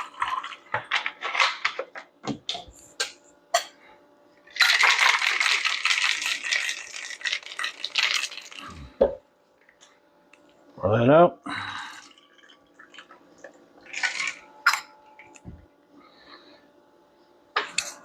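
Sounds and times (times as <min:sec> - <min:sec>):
ice rattling in cocktail shaker: 0:04.5 - 0:08.7, 0:13.9 - 0:14.4.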